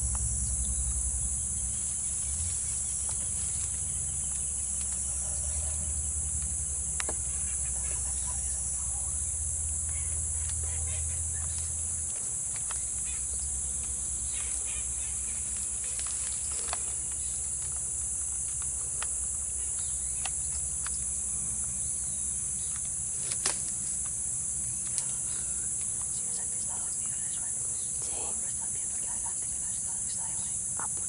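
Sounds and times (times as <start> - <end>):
high-pitched insect chorus: 0.0 - 31.0
faint clicks: 24.8 - 29.6.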